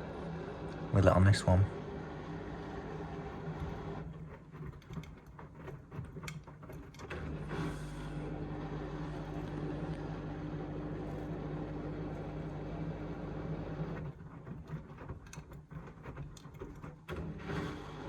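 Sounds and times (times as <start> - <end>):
washing machine motor hum: 0.0 - 18.0
washing machine clicking and rattling: 3.6 - 7.5, 13.7 - 17.7.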